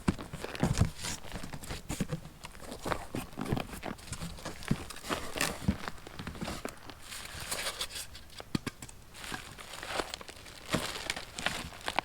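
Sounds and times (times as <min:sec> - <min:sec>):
cardboard and packing crinkling: 0:00.0 - 0:12.0.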